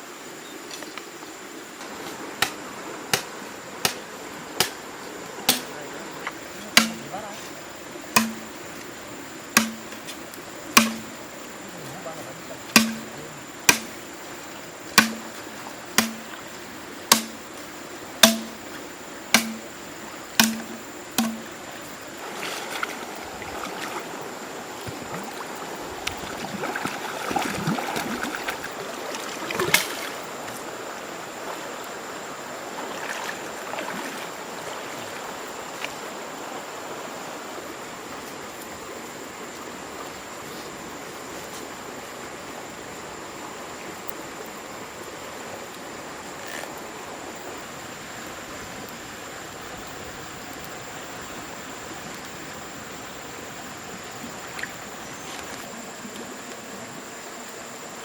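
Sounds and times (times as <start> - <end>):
steady hiss: 0.0 - 58.0
tool striking wood: 6.7 - 7.1, 8.2 - 8.6, 9.6 - 10.0, 10.8 - 11.2, 12.7 - 14.0, 15.0 - 15.4, 16.0 - 16.4, 17.1 - 17.4, 18.2 - 18.6, 19.3 - 19.7, 20.4 - 21.5.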